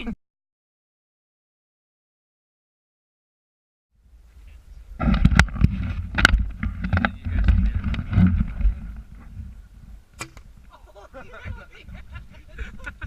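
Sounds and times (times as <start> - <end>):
wind on microphone: 4.1 - 13.0
camera handling rumble: 5.0 - 9.3.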